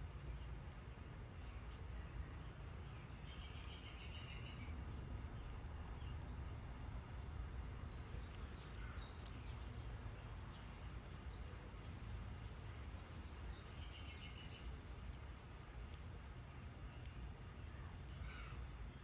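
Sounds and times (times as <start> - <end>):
small animal call: 17.8 - 18.9.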